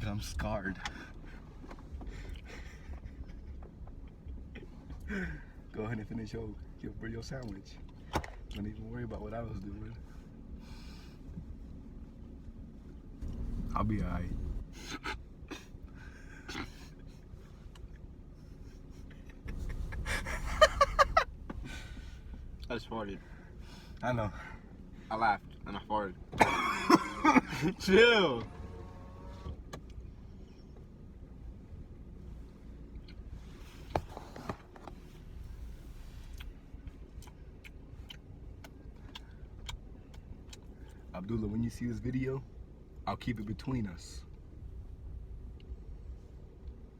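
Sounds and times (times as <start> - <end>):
low rumble inside car: 0.0 - 46.9
man laughing: 2.2 - 3.7, 18.4 - 22.2, 26.4 - 27.8
low rumble: 9.8 - 25.6.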